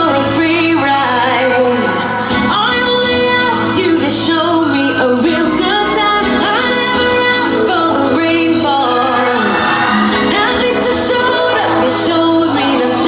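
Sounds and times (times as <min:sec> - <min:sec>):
pop song with woman singing: 0:00.0 - 0:13.0.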